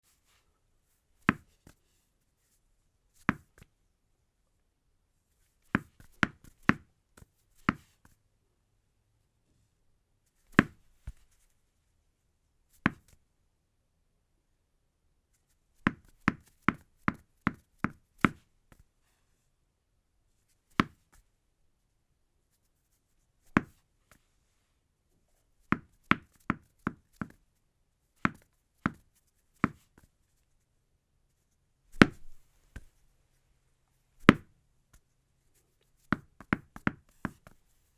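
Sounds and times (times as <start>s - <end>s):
tennis ball bouncing: 32.0s - 32.9s.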